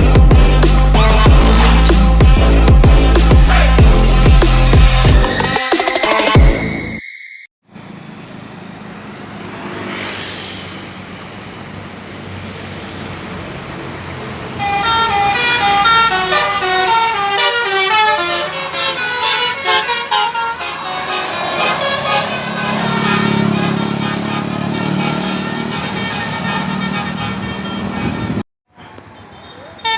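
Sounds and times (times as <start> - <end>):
bus horn playing melody: 0.0 - 5.4, 14.5 - 28.4
electronic dance music: 0.0 - 7.0
traffic and engine noise: 7.6 - 29.9.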